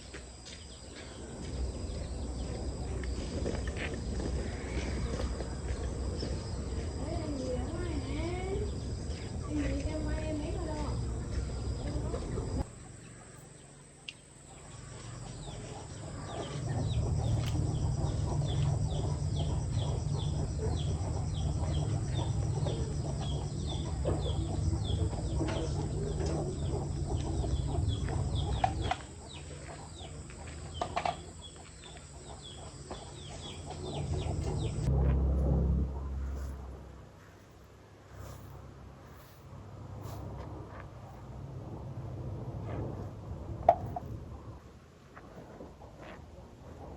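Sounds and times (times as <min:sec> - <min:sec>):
chickens peeping: 0:11.6 - 0:34.9
low rumble: 0:15.3 - 0:30.8, 0:32.2 - 0:44.7.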